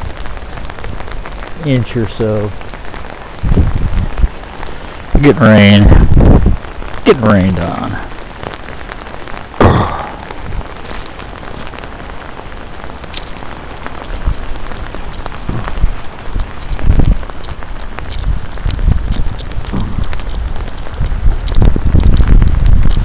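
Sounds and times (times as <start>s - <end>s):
heavy rain pattering: 0.0s - 23.0s
dull low thumps: 3.4s - 4.4s, 5.8s - 6.6s, 9.6s - 10.7s, 15.2s - 23.0s.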